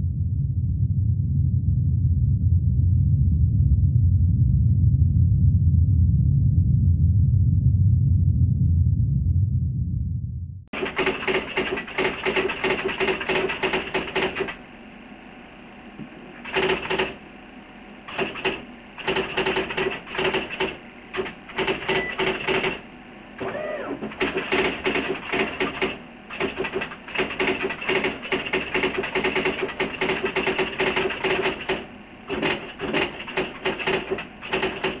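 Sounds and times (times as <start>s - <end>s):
typewriter keys clacking: 10.8s - 14.6s, 16.4s - 17.2s, 18.1s - 22.8s, 24.1s - 35.0s.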